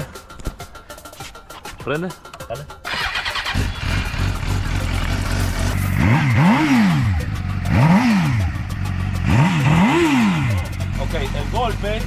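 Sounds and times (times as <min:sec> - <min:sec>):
motorcycle engine revving: 0:02.9 - 0:12.0.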